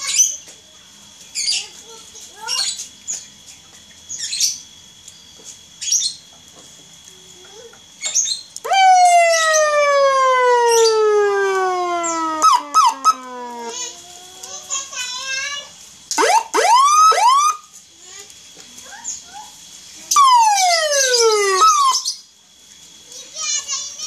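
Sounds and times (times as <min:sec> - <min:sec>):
electronic siren wail: 0:08.6 - 0:13.7, 0:16.2 - 0:17.7, 0:20.1 - 0:22.1.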